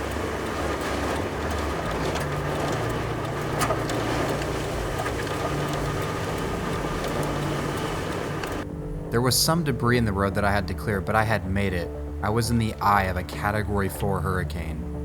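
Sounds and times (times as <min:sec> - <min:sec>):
wind and rain rushing: 0:00.0 - 0:08.7
low engine hum: 0:00.0 - 0:09.6.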